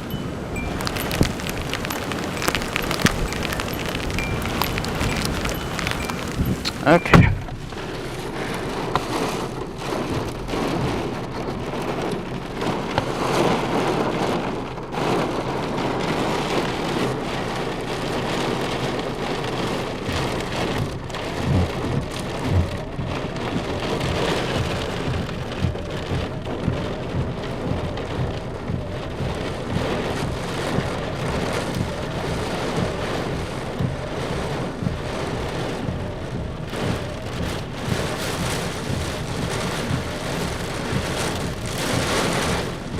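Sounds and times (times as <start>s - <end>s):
low thumps: 0.0s - 8.1s, 20.0s - 42.9s
heavy rain pelting a car: 0.0s - 42.9s.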